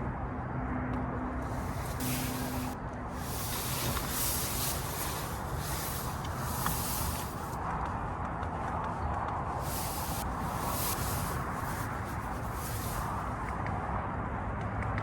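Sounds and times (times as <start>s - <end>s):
strong wind gusting: 1.4s - 8.2s, 9.5s - 13.6s.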